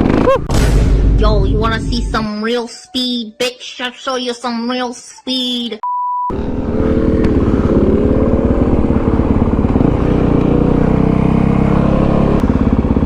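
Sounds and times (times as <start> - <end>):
motorcycle engine revving: 0.0 - 0.7, 6.3 - 13.0.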